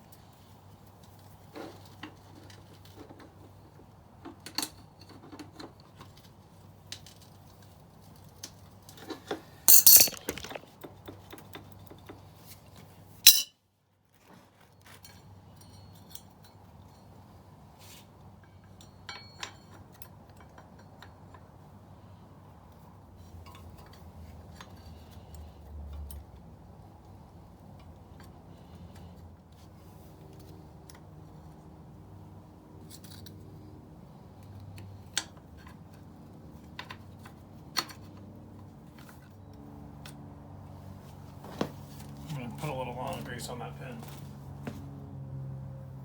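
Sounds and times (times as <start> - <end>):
metal tools clinking and clanking: 9.7 - 10.6, 13.3 - 13.5.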